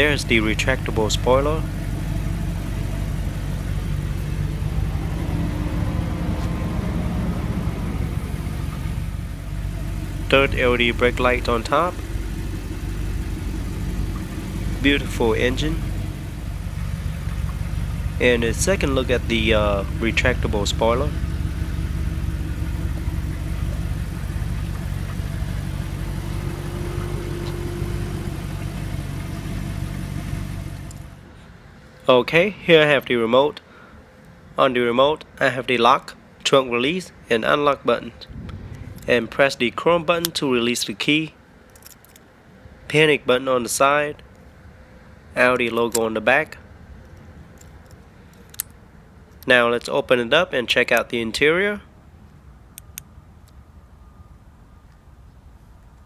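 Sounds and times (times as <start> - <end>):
vehicle engine idling: 0.0 - 33.0, 38.2 - 49.4
faint high whine: 52.7 - 55.7.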